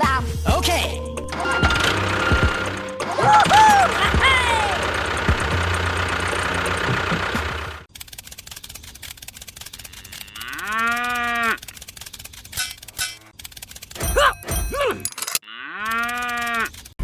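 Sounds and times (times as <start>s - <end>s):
cow mooing: 9.9s - 11.6s, 15.4s - 16.7s.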